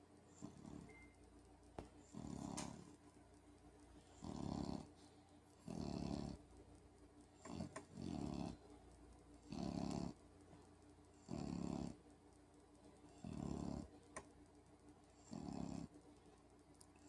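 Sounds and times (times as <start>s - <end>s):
puppy snoring: 0.3s - 1.1s, 2.0s - 3.0s, 4.0s - 5.0s, 5.6s - 6.5s, 7.4s - 8.7s, 9.4s - 10.2s, 11.1s - 12.1s, 13.1s - 14.0s, 15.1s - 16.0s.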